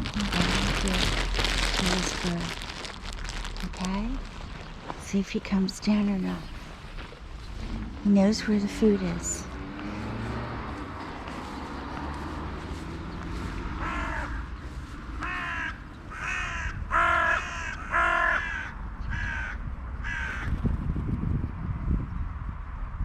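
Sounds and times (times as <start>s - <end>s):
low background rumble: 0.0s - 23.0s
crow cawing: 13.8s - 14.6s, 15.2s - 20.5s.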